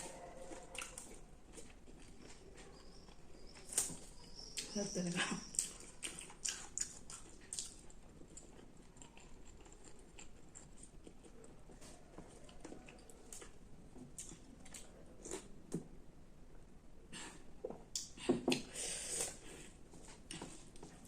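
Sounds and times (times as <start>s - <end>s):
person chewing: 0.0s - 4.7s, 5.4s - 15.8s.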